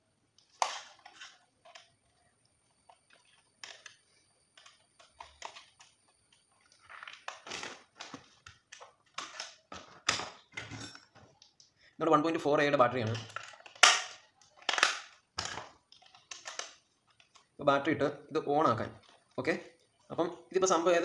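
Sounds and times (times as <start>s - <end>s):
hands handling plastic transmitter: 0.4s - 11.8s, 13.0s - 17.6s.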